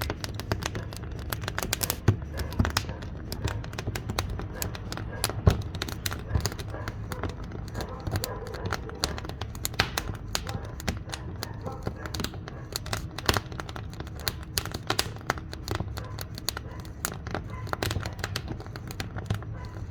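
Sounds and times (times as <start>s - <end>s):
wood fire crackling: 0.0s - 19.9s.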